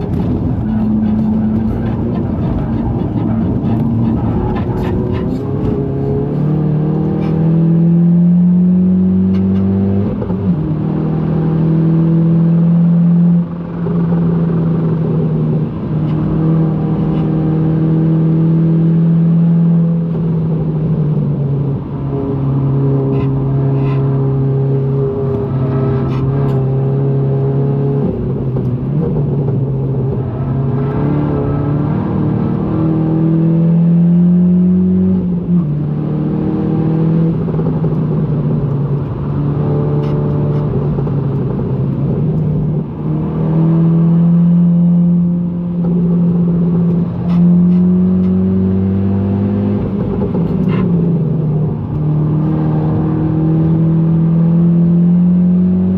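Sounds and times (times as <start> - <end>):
car engine under load: 0.0 - 55.9.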